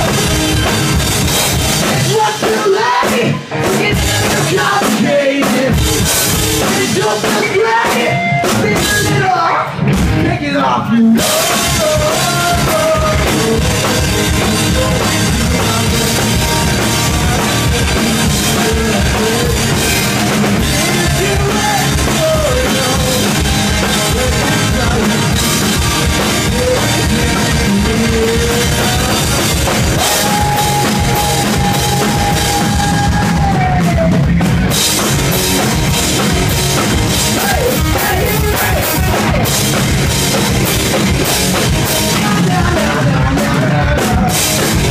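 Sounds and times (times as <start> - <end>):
drum kit beat: 0.0 - 10.4, 11.2 - 44.9
live rock band playing: 0.0 - 44.9.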